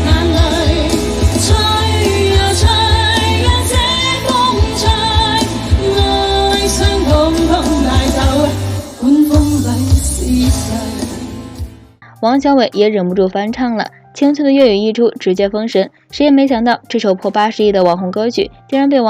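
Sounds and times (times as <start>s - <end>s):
pop music with drum beat: 0.0s - 12.0s.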